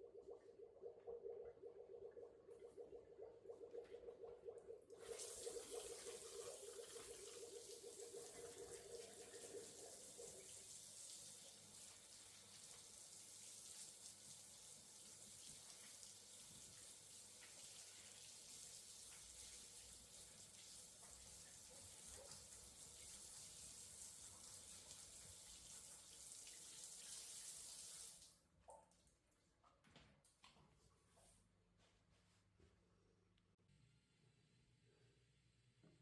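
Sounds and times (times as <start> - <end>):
tap water running into sink: 0.1 - 28.3.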